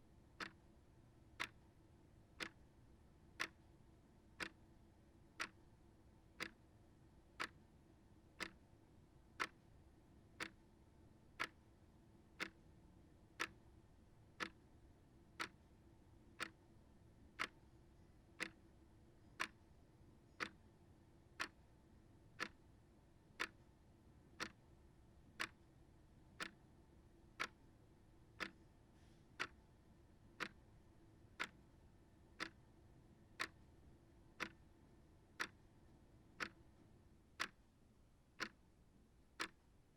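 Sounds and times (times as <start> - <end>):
shelf clock ticking: 1.4 - 1.6, 2.4 - 2.6, 5.4 - 5.6, 6.4 - 6.6, 7.4 - 7.6, 8.4 - 8.6, 11.4 - 11.6, 12.4 - 12.6, 15.4 - 15.6, 22.4 - 22.6, 24.4 - 24.6, 27.4 - 27.6, 29.4 - 29.6, 30.4 - 30.6, 31.4 - 31.6, 32.4 - 32.6, 33.4 - 33.6, 34.4 - 34.6, 35.4 - 35.6, 36.4 - 36.6, 38.4 - 38.6.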